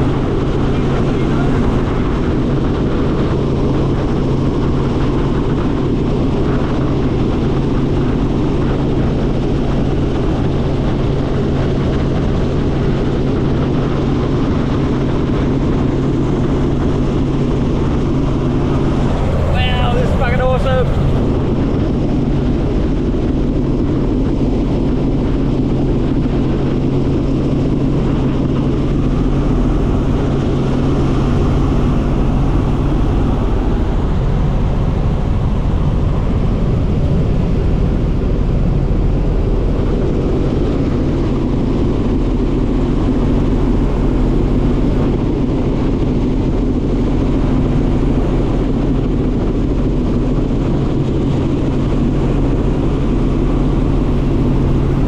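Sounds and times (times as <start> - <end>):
helicopter engine and rotor drone: 0.0 - 55.0.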